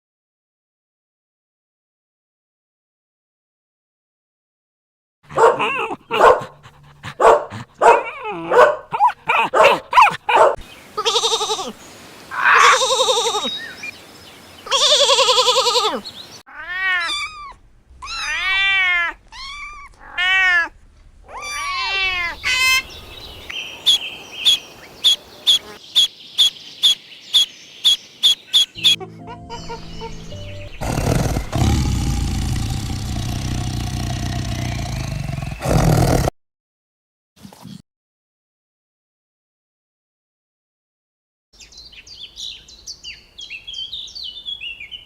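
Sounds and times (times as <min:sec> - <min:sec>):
animal calls: 0:08.9 - 0:13.9, 0:29.7 - 0:35.8
long drawn-out animal cries: 0:11.0 - 0:13.7, 0:14.6 - 0:22.9
rising-and-falling animal cries: 0:11.0 - 0:13.9, 0:14.6 - 0:23.1.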